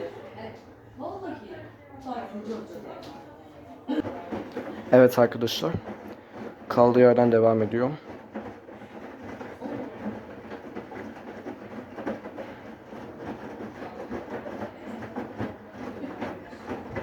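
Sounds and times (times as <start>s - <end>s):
light clatter in drum: 3.9s - 17.0s
washing machine drum rumbling: 4.0s - 17.0s.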